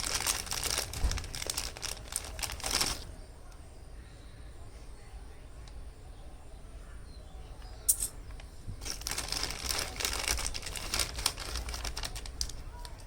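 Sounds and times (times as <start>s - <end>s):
plastic packaging crinkling: 0.0s - 3.2s, 7.9s - 13.0s
sharp click: 7.9s - 8.2s.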